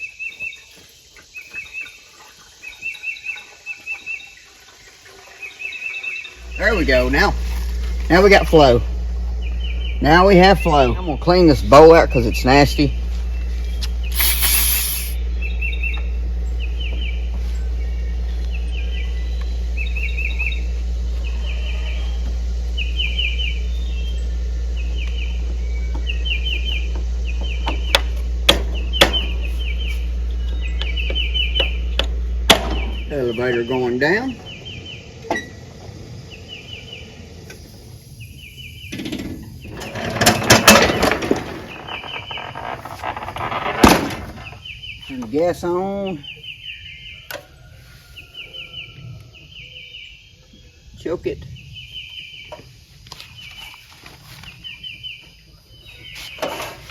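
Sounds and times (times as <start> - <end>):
steady low hum: 6.4 - 39.8
songbird chirping: 9.4 - 21.5, 22.7 - 28.2, 28.8 - 39.8, 44.4 - 56.8
bird chirping: 13.4 - 16.1, 36.3 - 39.7
loud hiss: 14.1 - 15.2.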